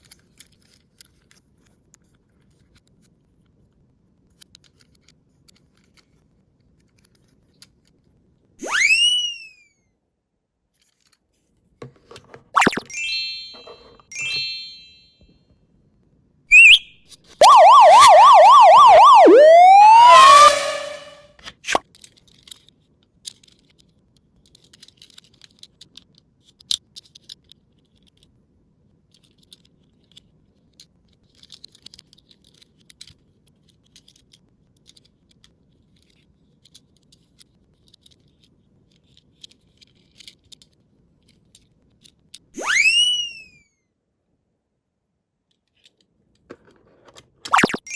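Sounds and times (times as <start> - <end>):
chirpy cartoon blips: 8.6 - 9.5, 12.6 - 14.9, 16.5 - 21.8, 42.6 - 43.5, 47.5 - 47.9
rising siren wail: 8.6 - 9.5, 16.5 - 21.8, 42.6 - 43.5, 47.6 - 47.9
siren yelp: 8.6 - 9.5, 12.6 - 14.7, 16.5 - 21.8, 42.6 - 43.5, 47.5 - 47.9.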